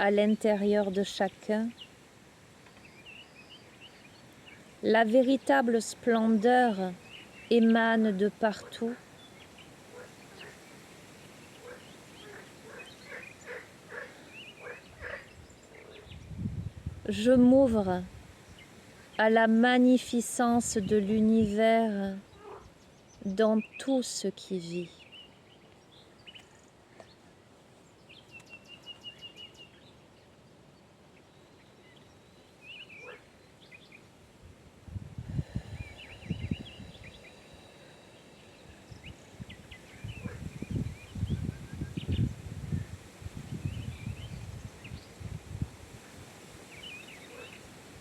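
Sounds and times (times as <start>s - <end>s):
small birds singing: 0.0s - 16.7s, 20.2s - 34.2s, 35.4s - 45.4s, 46.2s - 47.7s
bird chirping: 6.9s - 16.4s
frogs croaking: 8.4s - 16.2s, 22.4s - 22.8s, 33.0s - 33.4s, 39.9s - 40.5s.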